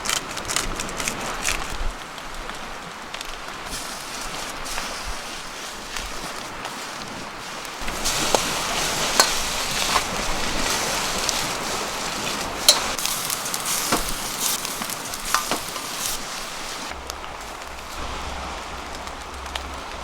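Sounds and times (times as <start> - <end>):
rice sizzling in a wok: 3.6 - 18.0.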